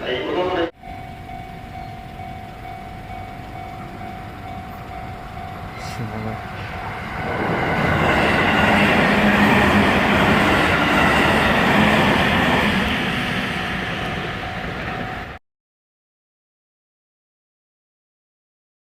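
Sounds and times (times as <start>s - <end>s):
train wheels clattering on rails: 1.3s - 15.4s.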